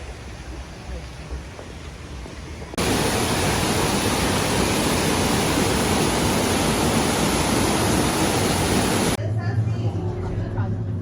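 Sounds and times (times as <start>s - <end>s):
loud rushing noise: 2.8s - 9.2s.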